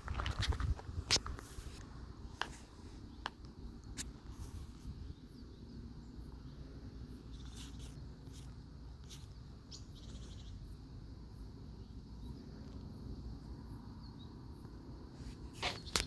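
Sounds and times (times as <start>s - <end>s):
low rumble of wind: 0.0s - 16.0s
bird trill: 9.7s - 10.6s.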